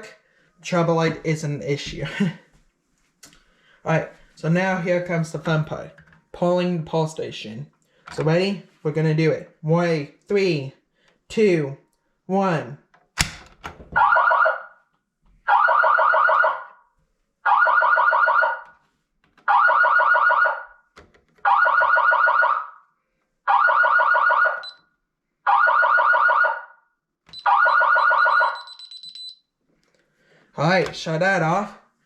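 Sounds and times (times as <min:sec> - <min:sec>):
fire alarm siren fluttering: 0:14.0 - 0:18.7, 0:19.4 - 0:20.8, 0:21.4 - 0:29.4
high steady beep: 0:27.3 - 0:29.4.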